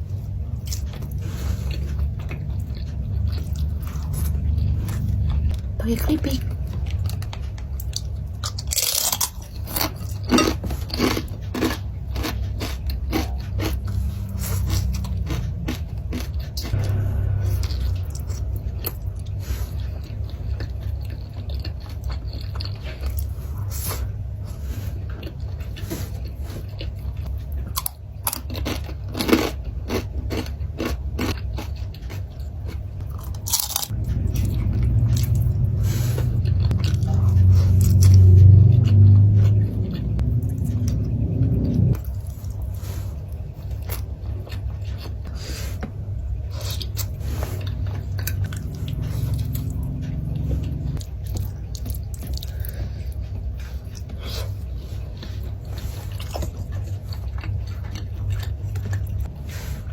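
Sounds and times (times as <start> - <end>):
steady low hum: 0.0 - 59.9
crunching crispy food: 7.9 - 17.0, 27.7 - 35.7.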